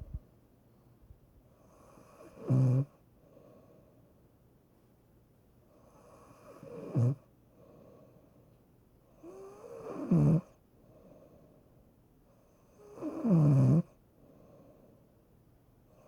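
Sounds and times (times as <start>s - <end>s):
soft breaths: 3.1s - 4.3s, 7.4s - 8.7s, 10.6s - 12.0s, 14.1s - 15.4s.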